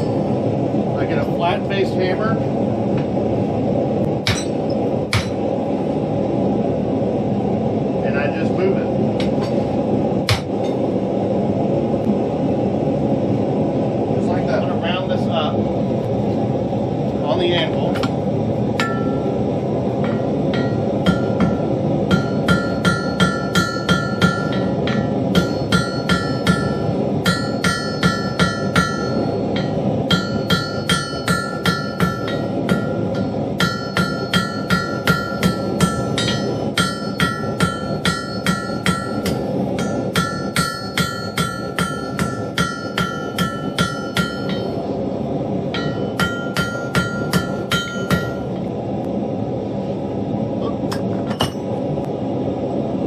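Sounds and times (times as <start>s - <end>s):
steady rushing noise: 0.0s - 53.0s
hammer striking steel on anvil: 4.2s - 5.4s, 10.3s - 10.8s, 18.8s - 19.3s, 20.0s - 44.8s, 45.7s - 48.5s, 50.9s - 51.7s.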